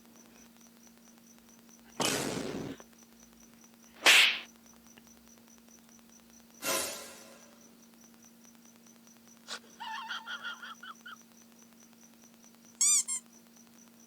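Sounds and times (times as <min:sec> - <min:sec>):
squeaky chirping: 0:12.8 - 0:13.3.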